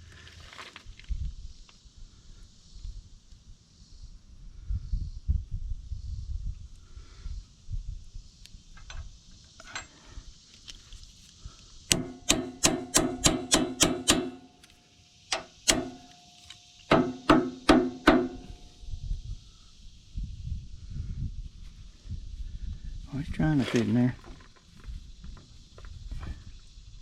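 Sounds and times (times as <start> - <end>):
hammer striking steel pin: 11.9 - 14.5, 15.3 - 16.2, 16.9 - 18.6.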